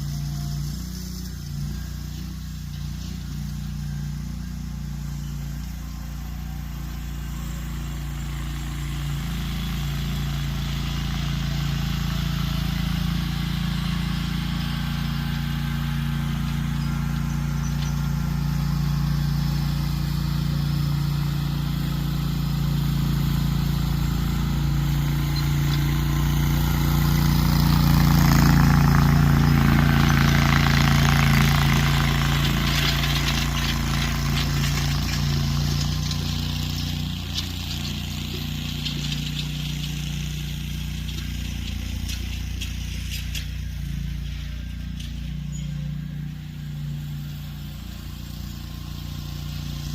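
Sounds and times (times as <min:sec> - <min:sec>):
garden tractor engine running: 0:00.0 - 0:49.9
implement clattering and scraping soil: 0:00.0 - 0:49.9.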